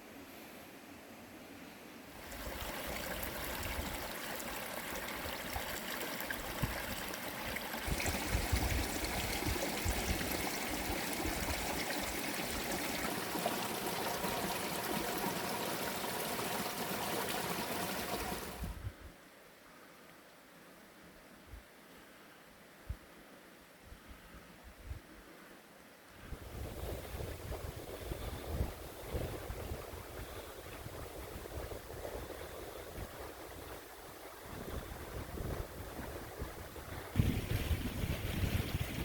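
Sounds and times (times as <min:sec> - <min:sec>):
small stream flowing: 0:01.8 - 0:18.8, 0:26.3 - 0:39.0.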